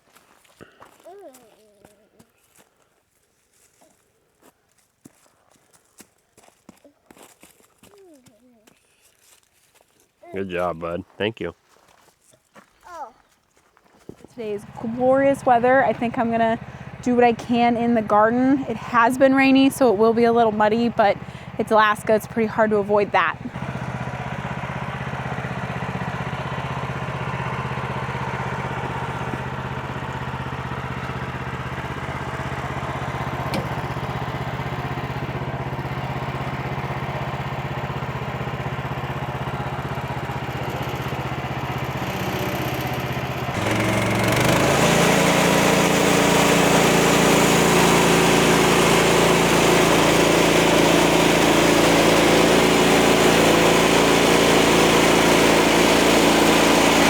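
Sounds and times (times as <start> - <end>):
gasoline engine running and revving: 14.3 - 57.0.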